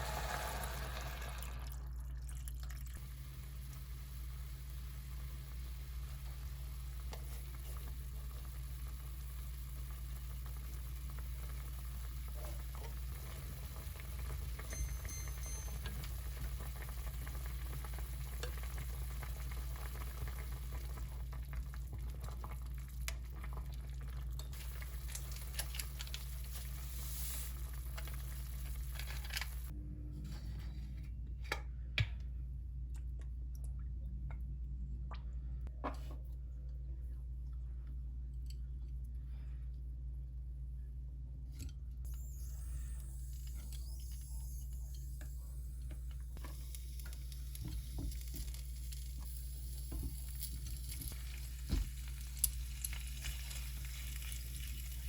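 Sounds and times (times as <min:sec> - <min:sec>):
food sizzling in a pan: 0:00.0 - 0:02.0, 0:24.5 - 0:29.7, 0:46.4 - 0:55.0
steady low hum: 0:00.0 - 0:52.9.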